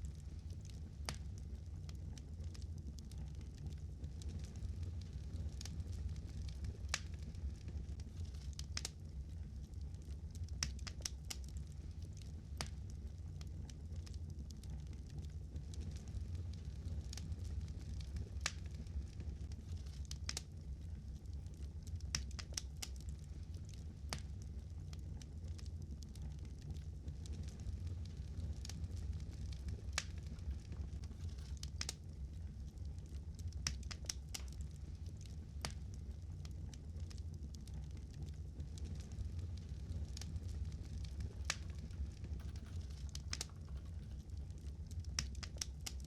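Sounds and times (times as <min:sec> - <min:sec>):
fire crackling and popping: 0:00.0 - 0:46.0
low fire rumble: 0:00.0 - 0:46.0.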